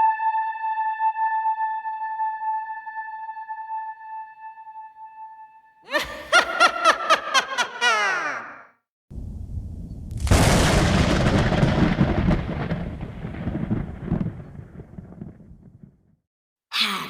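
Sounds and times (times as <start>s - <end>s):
thunder cracking and rumbling: 9.2s - 16.2s.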